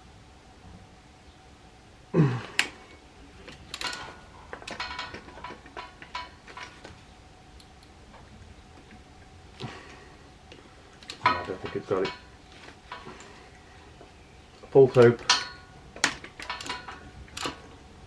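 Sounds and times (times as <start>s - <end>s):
loud metal clank: 15.2s - 17.6s.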